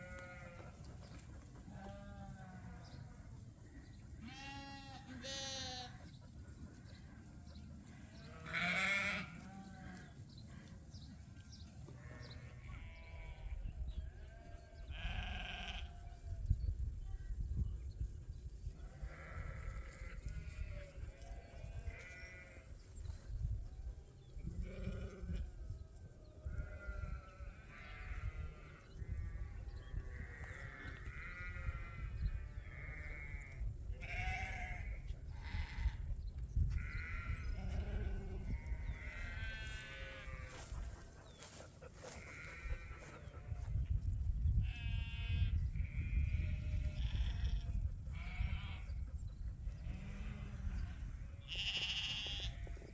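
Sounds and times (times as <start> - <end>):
lambs bleating: 0.0 - 0.6, 1.8 - 2.8, 4.2 - 6.0, 8.2 - 10.0, 12.0 - 13.3, 14.3 - 16.1, 18.9 - 20.9, 21.6 - 22.6, 24.6 - 25.4, 26.6 - 28.8, 30.3 - 36.0, 36.8 - 40.8, 41.4 - 43.5, 44.6 - 48.9, 49.9 - 52.6.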